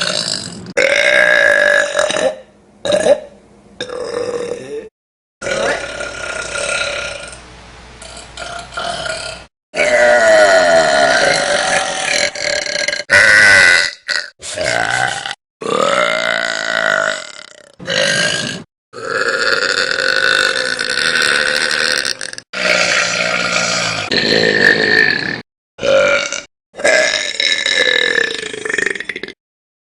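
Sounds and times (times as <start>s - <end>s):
women burping loudly: 8.4s - 29.4s.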